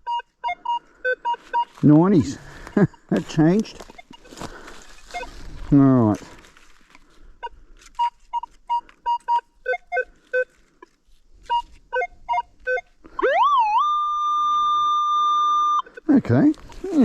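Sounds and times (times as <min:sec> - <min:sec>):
metal detector beeps: 0:00.0 - 0:04.3, 0:05.0 - 0:05.4, 0:07.4 - 0:10.5, 0:11.5 - 0:17.0
metal detector rising tone: 0:13.2 - 0:15.8.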